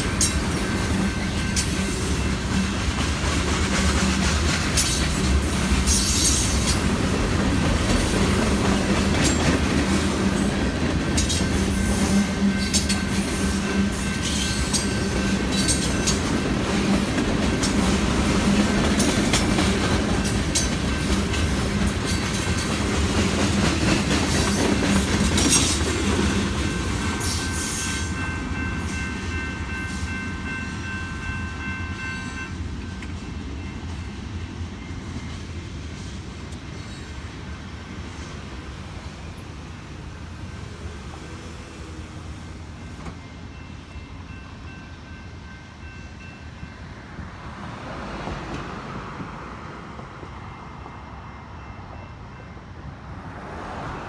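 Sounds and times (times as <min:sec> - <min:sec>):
wheels clicking over rail joints: 0:00.0 - 0:30.1
train cars rumbling past: 0:00.0 - 0:54.0.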